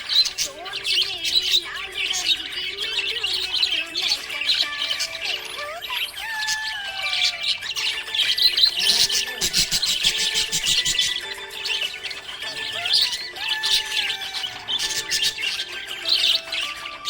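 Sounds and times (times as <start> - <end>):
budgerigar chirping and chattering: 0.0 - 17.0.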